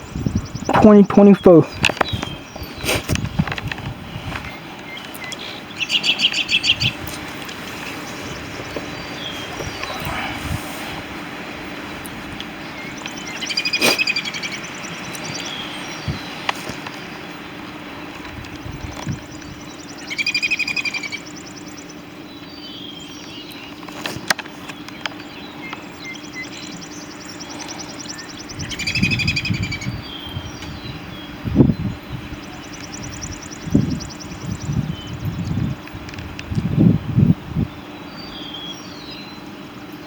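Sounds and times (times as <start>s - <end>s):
steady low hum: 1.6s - 23.8s
bird buzzy high-pitched call: 12.1s - 16.4s, 18.7s - 21.8s, 25.4s - 31.4s.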